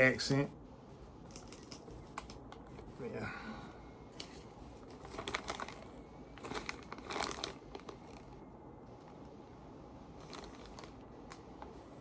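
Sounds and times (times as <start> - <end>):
plastic packaging crinkling: 4.2 - 8.4, 10.2 - 11.4.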